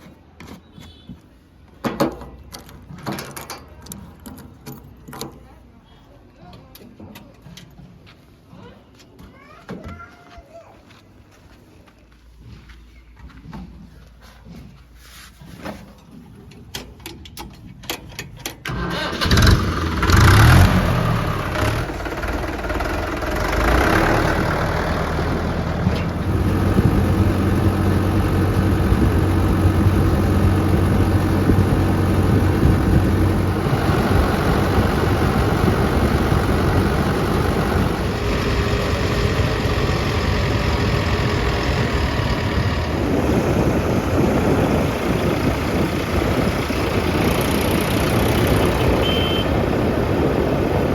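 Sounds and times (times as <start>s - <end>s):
diesel engine starting and running: 18.4s - 50.9s.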